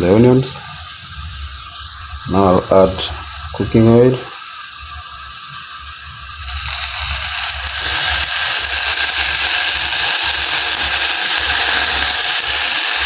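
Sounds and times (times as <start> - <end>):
onions sizzling in a pan: 0.0 - 13.0
oil being poured: 6.4 - 12.4.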